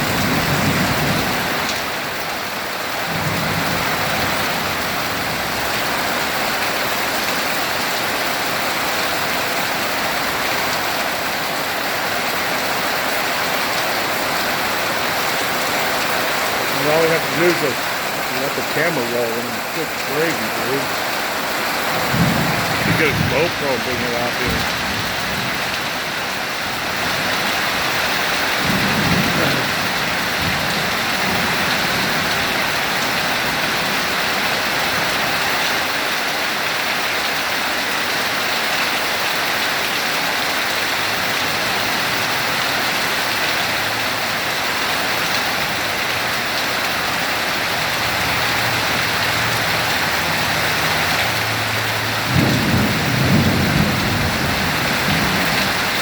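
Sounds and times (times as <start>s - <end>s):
heavy rain falling: 0.0s - 56.0s
low thunder rumble: 21.8s - 34.3s, 51.6s - 56.0s.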